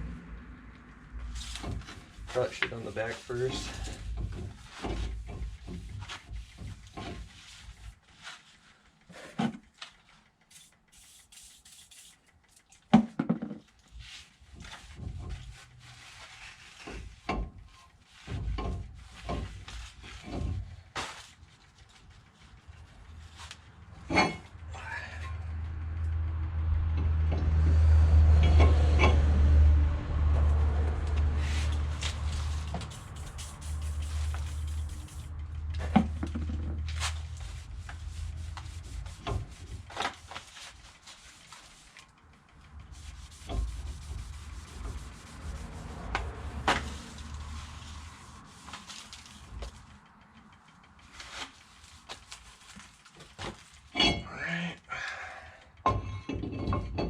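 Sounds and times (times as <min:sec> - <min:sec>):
cloth rubbing on metal: 0:01.3 - 0:08.9, 0:10.5 - 0:12.3, 0:13.9 - 0:17.3, 0:18.0 - 0:23.6, 0:31.4 - 0:35.4, 0:36.1 - 0:42.1, 0:42.8 - 0:49.9
low rumble: 0:25.3 - 0:39.0.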